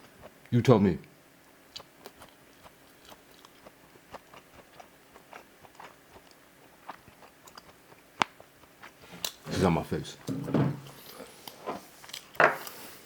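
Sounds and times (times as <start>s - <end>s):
chewing food wet mouth clicks: 1.7s - 9.4s.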